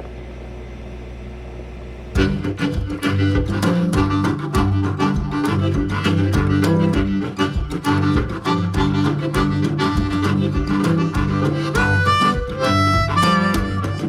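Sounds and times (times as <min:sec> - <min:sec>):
upbeat music with strings and beat: 0:02.2 - 0:14.0.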